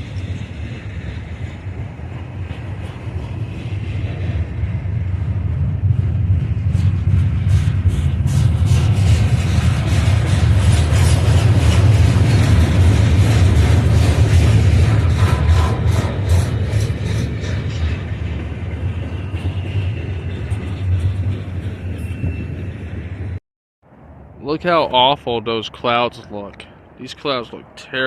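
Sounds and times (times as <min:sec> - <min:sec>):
freight train rumbling: 0:00.0 - 0:28.0
wheels clicking over rails: 0:07.5 - 0:21.9.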